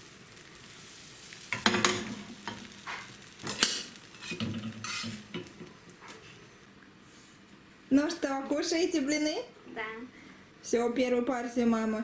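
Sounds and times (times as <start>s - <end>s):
pancakes sizzling in pan: 0.0s - 6.7s
utensil scraping frying pan: 1.4s - 6.6s.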